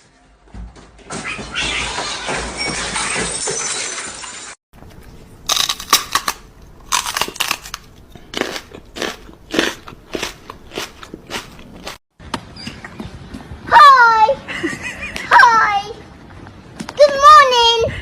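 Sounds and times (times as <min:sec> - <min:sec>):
brittle crunching: 0:04.8 - 0:12.0.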